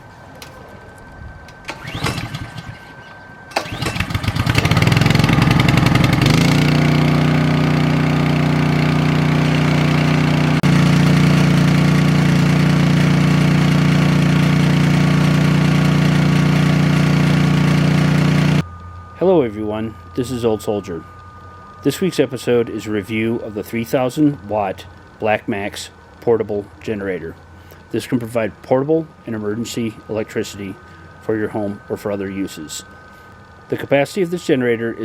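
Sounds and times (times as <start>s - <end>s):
generator engine starting: 1.5s - 18.6s.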